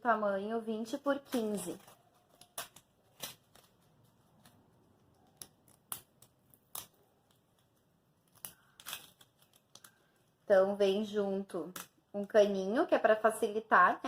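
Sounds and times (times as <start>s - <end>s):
plastic and paper packaging crinkles: 0.7s - 10.6s.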